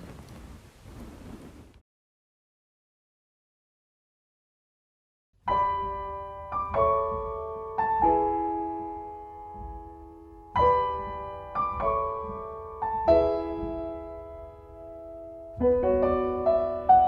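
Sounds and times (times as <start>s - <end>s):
slow solo piano: 5.4s - 17.0s.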